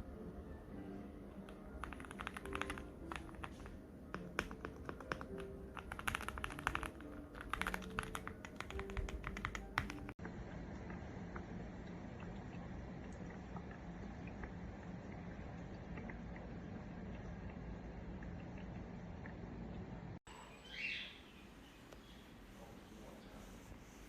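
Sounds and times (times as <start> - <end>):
mechanical keyboard typing: 1.3 - 10.2.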